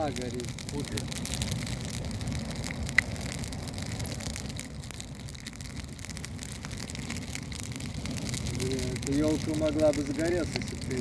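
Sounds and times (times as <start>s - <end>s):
campfire crackling: 0.0s - 11.0s.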